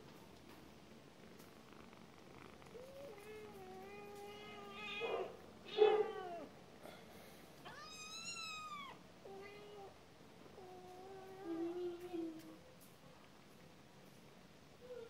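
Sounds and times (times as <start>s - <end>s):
cat meowing: 2.8s - 6.5s, 7.7s - 9.9s.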